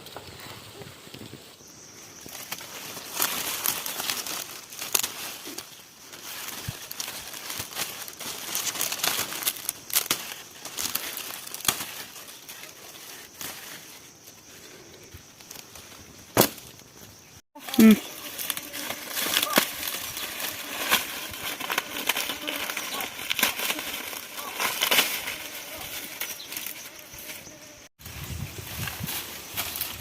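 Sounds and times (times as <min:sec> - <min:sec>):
dry maize leaves rustling: 0:00.0 - 0:30.0
corn stalks snapping: 0:02.2 - 0:13.8, 0:16.3 - 0:16.8, 0:17.7 - 0:26.8, 0:28.6 - 0:30.0.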